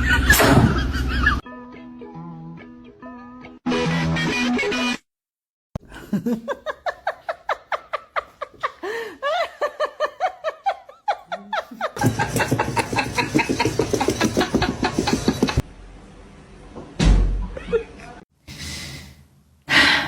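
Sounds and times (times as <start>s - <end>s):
music: 1.4s - 5.0s
person laughing: 5.8s - 15.6s.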